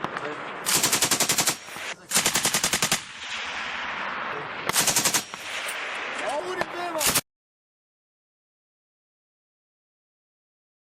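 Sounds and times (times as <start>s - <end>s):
machine gun automatic bursts: 0.6s - 3.1s, 4.7s - 5.8s.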